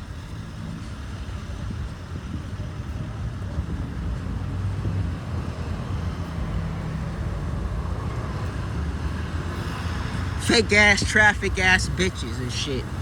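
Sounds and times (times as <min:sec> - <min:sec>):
car engines and tyres rumbling: 0:00.0 - 0:13.0
wind on microphone: 0:01.2 - 0:10.4.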